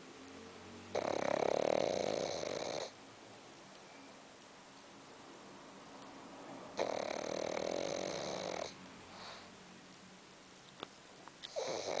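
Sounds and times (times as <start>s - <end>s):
dog snoring: 0.9s - 3.0s, 6.8s - 9.5s, 11.4s - 12.0s.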